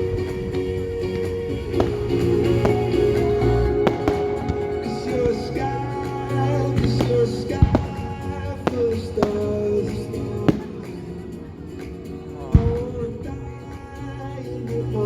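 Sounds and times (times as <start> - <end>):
loud music with singing: 0.0 - 15.0
firework bangs: 1.6 - 13.1.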